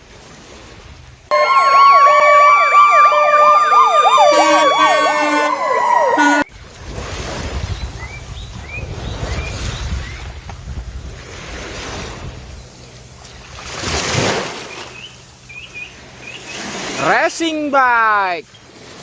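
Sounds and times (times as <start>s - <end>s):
ambulance siren wailing: 1.3s - 6.5s.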